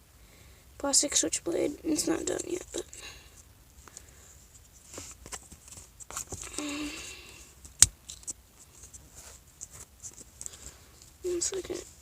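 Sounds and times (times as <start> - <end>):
light taps and rustles of handling: 3.4 - 6.7, 7.5 - 12.0.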